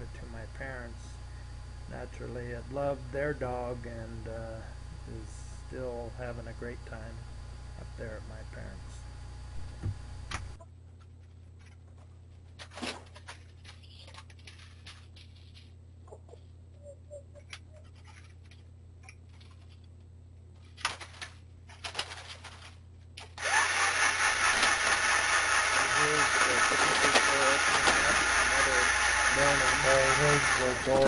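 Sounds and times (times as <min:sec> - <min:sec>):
low hum: 0:00.0 - 0:21.7, 0:22.3 - 0:31.0
loud steady hiss: 0:23.5 - 0:31.0.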